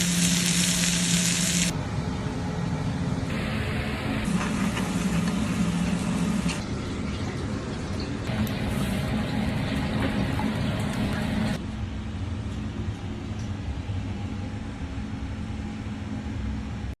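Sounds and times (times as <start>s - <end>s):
hiss: 0.0s - 1.7s.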